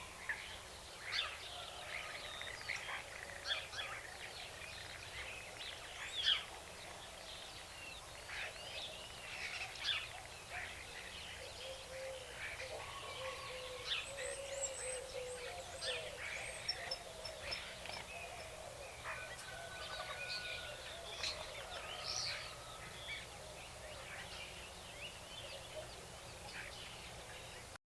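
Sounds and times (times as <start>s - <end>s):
faint background hiss: 0.0s - 27.8s
birds chirping and whistling: 11.0s - 27.2s.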